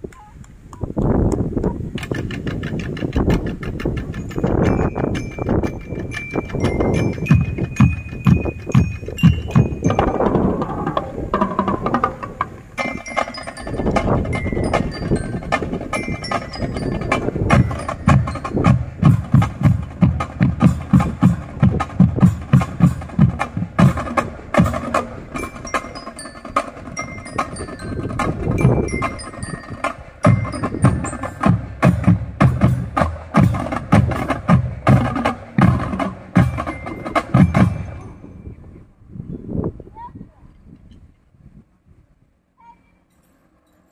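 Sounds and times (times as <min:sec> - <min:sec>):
snare and bass drum strokes: 0:02.0 - 0:29.2, 0:29.8 - 0:38.0
glockenspiel melody: 0:04.1 - 0:20.9, 0:24.6 - 0:38.7.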